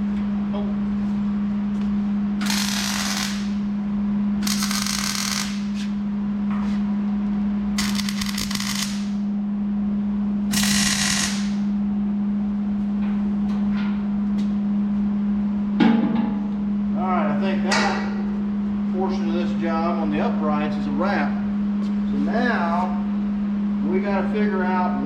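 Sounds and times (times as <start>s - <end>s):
steady low hum: 0.0s - 25.0s
arc welder crackling: 2.4s - 3.7s, 4.4s - 5.9s, 7.7s - 9.3s, 10.5s - 11.7s.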